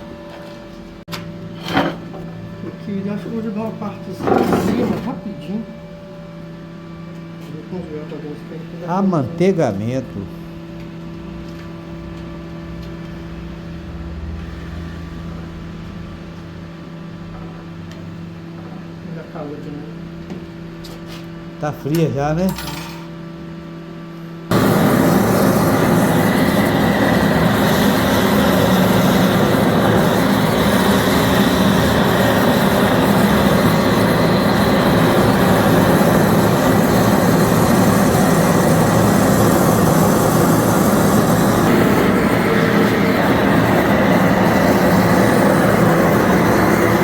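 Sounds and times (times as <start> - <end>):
gas torch flame rushing: 24.5 - 47.0.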